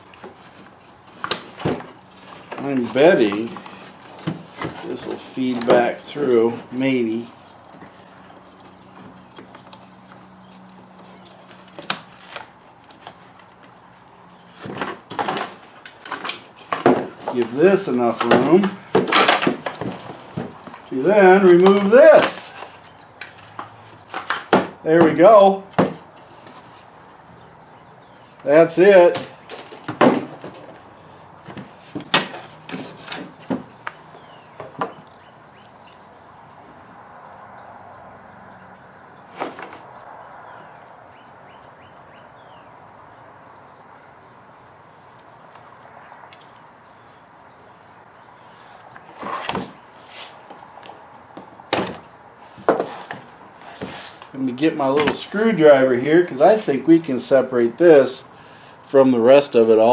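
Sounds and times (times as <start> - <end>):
plastic clattering: 0.0 - 8.0, 14.6 - 26.8, 29.1 - 30.8, 31.4 - 35.1.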